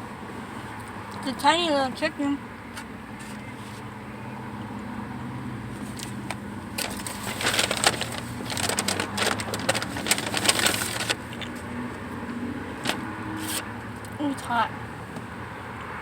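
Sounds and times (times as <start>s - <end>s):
paper wrapper crinkling: 5.8s - 11.5s, 12.8s - 13.6s.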